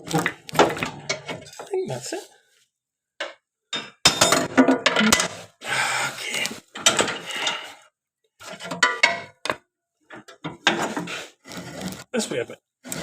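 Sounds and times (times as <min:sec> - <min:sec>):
metal clinks and scrapes: 0:06.7 - 0:09.3.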